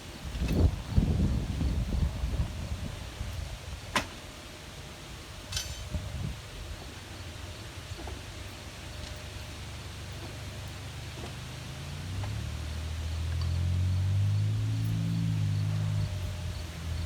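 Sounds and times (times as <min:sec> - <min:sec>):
sharp clicks with metallic ring: 0:05.5 - 0:05.9.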